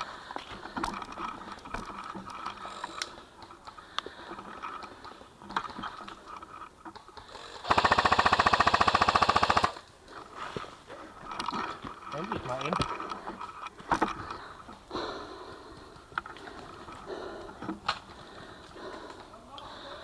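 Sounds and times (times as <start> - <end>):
faint clicks: 0.1 - 7.3
airsoft gun automatic burst: 7.6 - 9.8.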